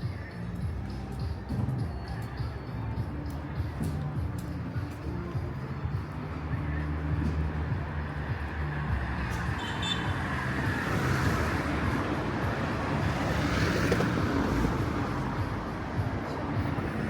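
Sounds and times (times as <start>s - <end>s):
vehicle passing by: 6.4s - 15.7s.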